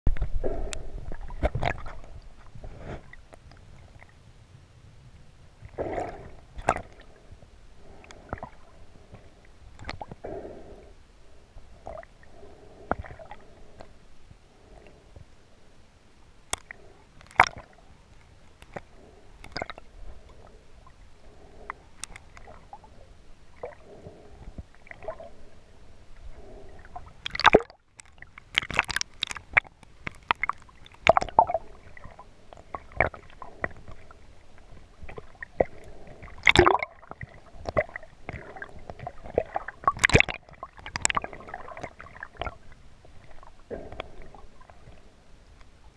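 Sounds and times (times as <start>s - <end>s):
water sloshing and gurgling: 0.1s - 45.9s
sharp clicks and pops: 9.1s - 10.2s, 16.5s - 19.9s, 21.7s - 22.5s, 27.2s - 31.5s, 37.6s - 42.6s.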